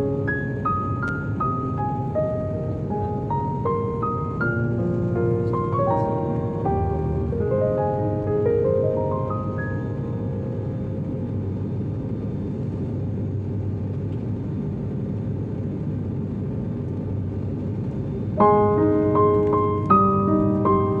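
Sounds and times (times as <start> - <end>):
piano music: 0.0 - 12.6, 18.4 - 21.0
airliner cabin drone: 0.0 - 21.0.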